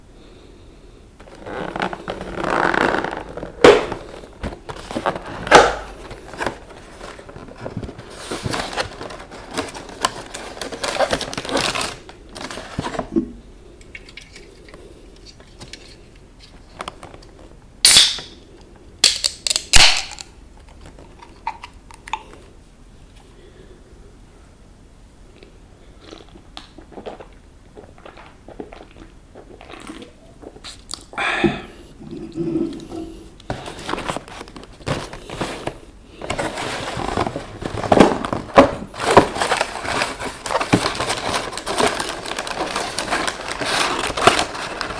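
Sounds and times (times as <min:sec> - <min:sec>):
food packaging rustling and crinkling: 0:01.2 - 0:13.2, 0:13.8 - 0:17.6, 0:33.4 - 0:44.9.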